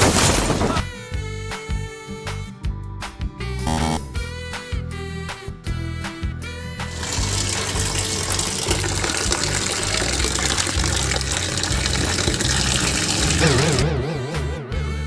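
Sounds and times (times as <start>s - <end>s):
background music with bass line: 0.0s - 15.0s
rushing water noise: 7.0s - 13.8s
warbling tone: 7.1s - 15.0s.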